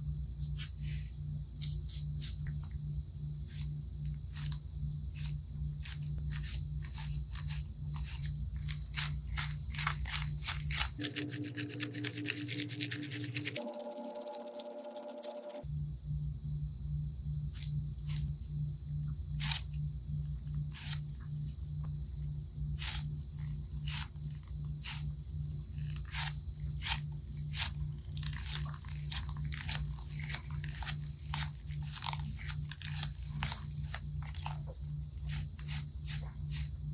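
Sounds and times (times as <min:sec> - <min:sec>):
low pulsing hum: 0:00.0 - 0:36.9
crunchy slime crackling: 0:05.1 - 0:15.6, 0:22.8 - 0:36.7.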